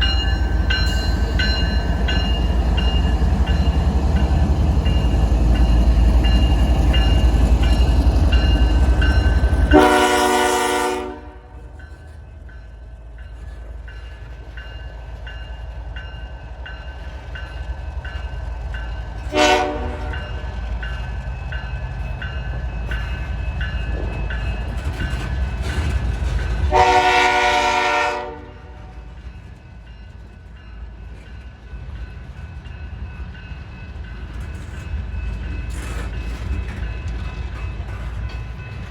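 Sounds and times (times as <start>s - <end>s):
moving train rumble: 0.0s - 38.9s
locomotive air horn: 9.7s - 11.6s, 19.3s - 20.3s, 26.7s - 29.1s.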